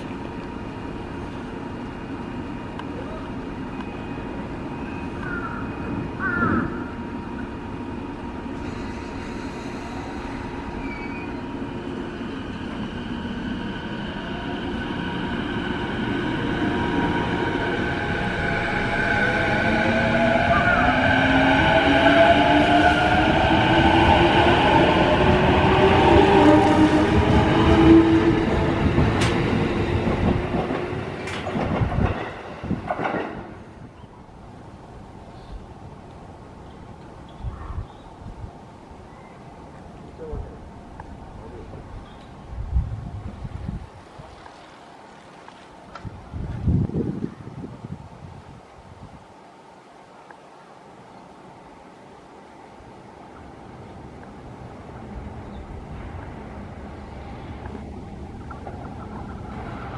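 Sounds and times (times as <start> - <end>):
electric train rumble: 0.0 - 37.1, 52.7 - 59.9.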